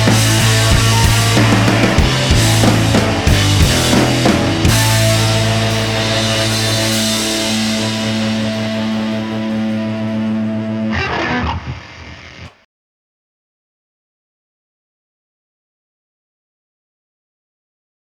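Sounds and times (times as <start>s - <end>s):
drum hits: 0.0s - 10.5s
rock music: 0.0s - 12.5s.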